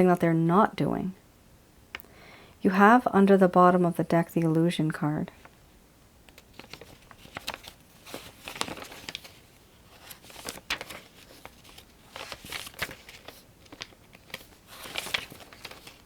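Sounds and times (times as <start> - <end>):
cards rustling and clicking: 6.3 - 16.0.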